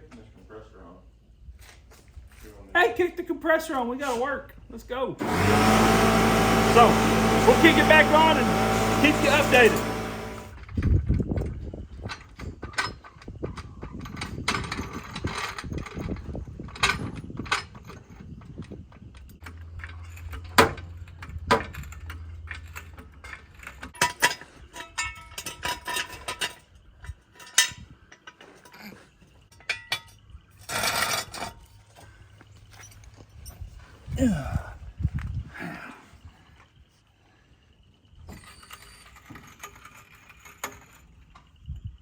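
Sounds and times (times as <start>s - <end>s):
wrenches clinking on steel: 19.4s - 31.8s, 38.3s - 41.5s.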